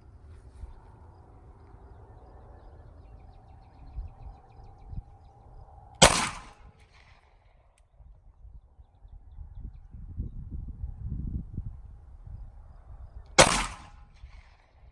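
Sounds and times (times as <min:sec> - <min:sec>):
pistol shot: 0:06.0 - 0:07.3, 0:13.4 - 0:14.6.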